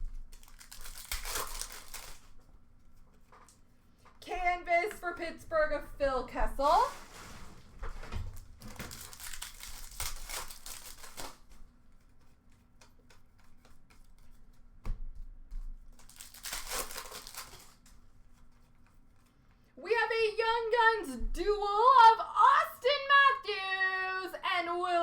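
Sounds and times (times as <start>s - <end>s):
foil packs tearing and crinkling: 0.0s - 2.5s, 8.2s - 12.1s, 15.9s - 17.9s
cards shuffled by hand: 0.0s - 4.2s, 8.6s - 19.7s.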